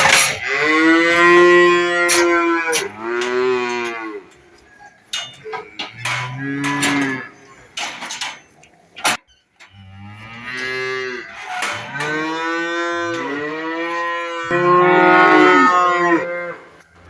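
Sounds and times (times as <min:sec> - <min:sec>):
cows mooing: 0:00.0 - 0:08.2, 0:09.6 - 0:16.9.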